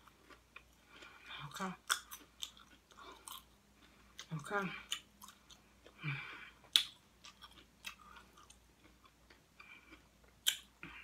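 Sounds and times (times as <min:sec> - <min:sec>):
chewing and crunching chips: 0:00.0 - 0:11.0
person breathing: 0:05.9 - 0:06.7.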